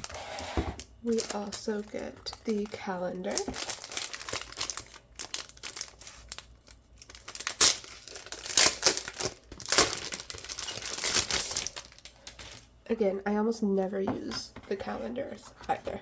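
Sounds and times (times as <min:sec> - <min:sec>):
paper packaging crinkling: 0:00.8 - 0:12.7.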